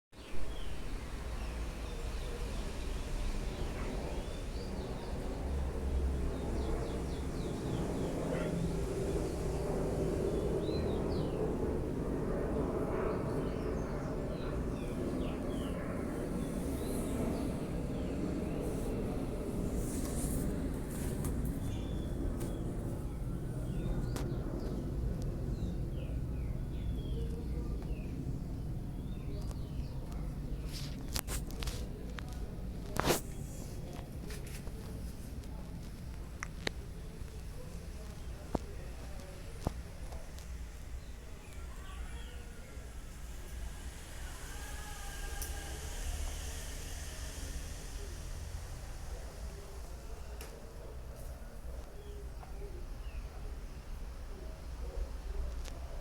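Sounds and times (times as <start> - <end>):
birds chirping: 0.2 - 31.6
low rumble: 0.4 - 30.7
background hiss: 30.6 - 56.0.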